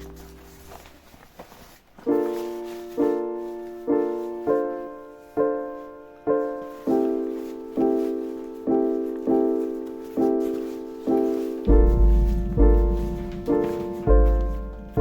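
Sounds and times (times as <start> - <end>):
keyboard chords: 11.2 - 15.0.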